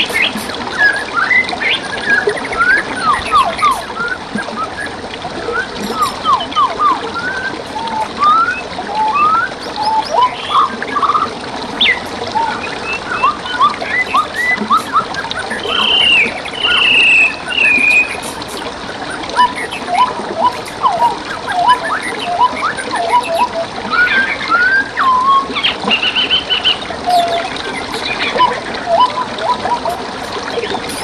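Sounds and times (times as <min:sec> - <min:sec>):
songbirds chirping and whistling: 0:00.0 - 0:31.0
trickle of flowing water: 0:00.0 - 0:31.0.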